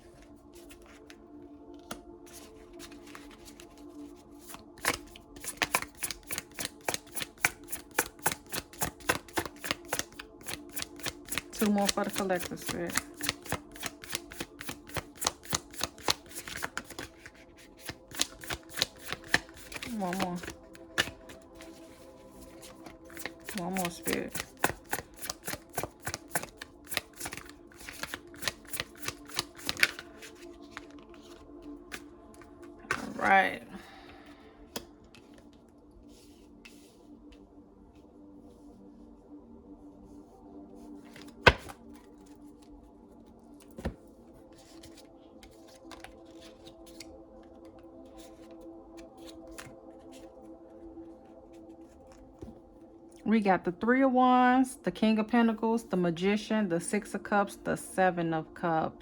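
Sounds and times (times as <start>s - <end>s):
cards riffling: 1.9s - 3.6s, 4.4s - 32.0s, 41.1s - 42.3s
sharp card snaps: 41.2s - 41.8s.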